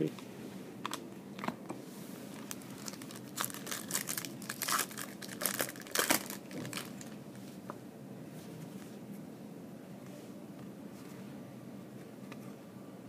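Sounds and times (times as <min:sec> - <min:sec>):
plastic wrapping crinkling and tearing: 0:02.4 - 0:07.2.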